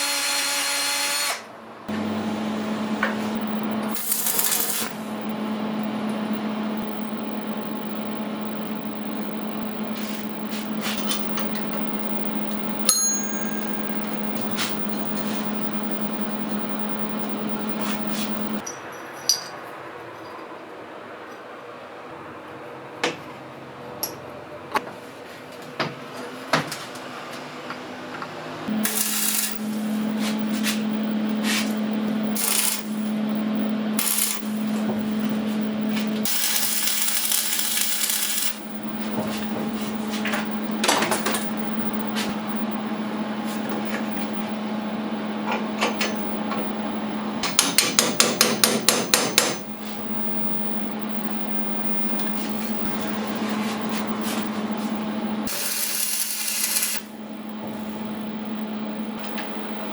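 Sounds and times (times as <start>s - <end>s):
washing machine motor hum: 1.7s - 10.9s, 28.4s - 40.8s.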